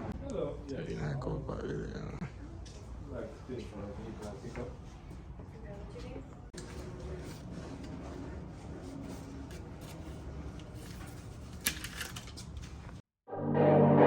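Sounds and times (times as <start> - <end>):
music: 13.3 - 14.0.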